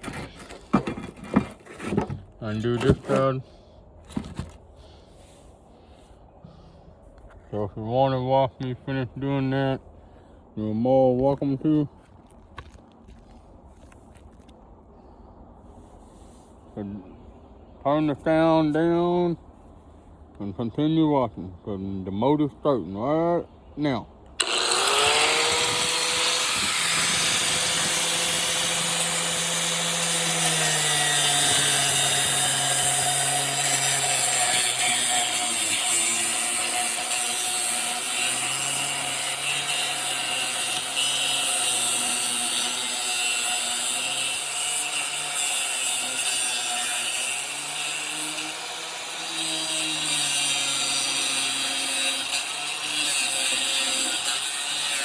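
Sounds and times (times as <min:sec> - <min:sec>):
angle grinder cutting metal: 0:24.4 - 0:55.0.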